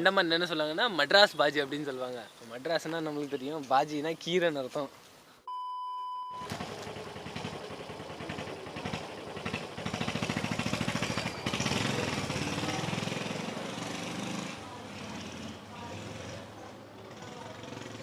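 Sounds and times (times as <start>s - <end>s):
electronic beep: 5.5s - 6.4s
small motorcycle engine running: 6.4s - 18.0s.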